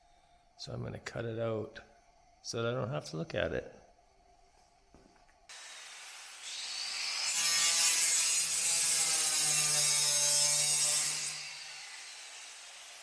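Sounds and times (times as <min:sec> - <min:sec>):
steady hiss: 0:05.5 - 0:07.2
power tool cutting sheet metal: 0:05.5 - 0:13.0.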